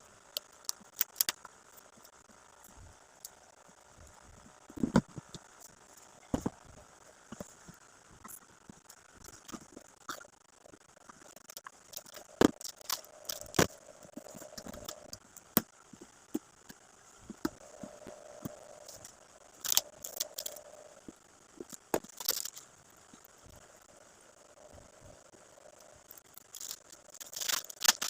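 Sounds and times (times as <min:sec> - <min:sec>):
plastic wrap crinkling: 0:26.4 - 0:28.0.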